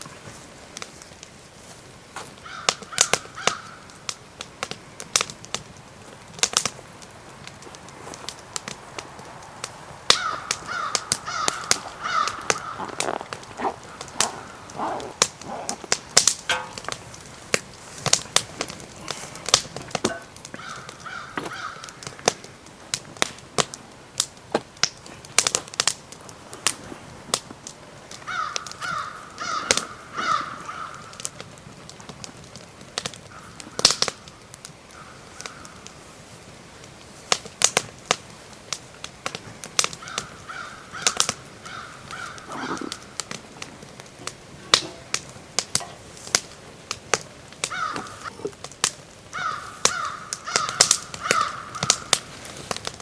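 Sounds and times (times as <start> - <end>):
stick fire crackling and popping: 0.0 - 53.0
crows cawing: 2.4 - 4.2, 10.1 - 17.0, 18.9 - 22.4, 28.2 - 31.4, 33.2 - 36.0, 39.8 - 45.2, 47.6 - 48.7, 49.3 - 52.8.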